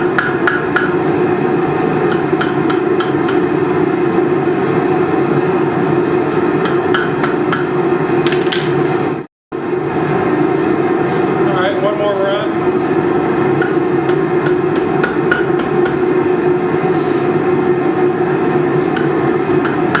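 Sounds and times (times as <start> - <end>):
hammer striking steel on anvil: 0.0 - 1.0, 2.1 - 3.5, 6.3 - 7.7, 19.0 - 20.0.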